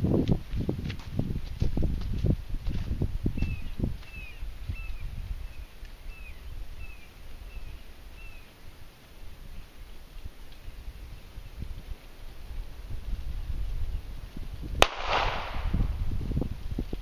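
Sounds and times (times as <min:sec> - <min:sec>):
bird chirping: 0:03.4 - 0:08.6.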